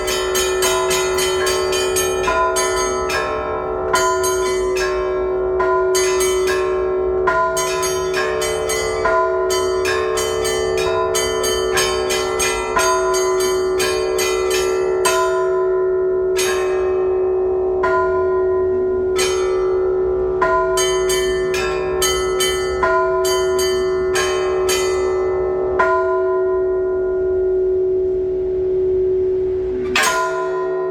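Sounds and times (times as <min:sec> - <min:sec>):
church bells ringing: 0:00.0 - 0:30.9
steady bell hum: 0:00.0 - 0:30.9.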